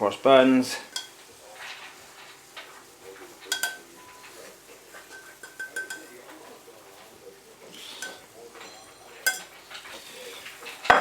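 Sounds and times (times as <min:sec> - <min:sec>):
spoon clinking against pan: 0:00.8 - 0:01.3, 0:03.4 - 0:06.7, 0:07.7 - 0:11.0.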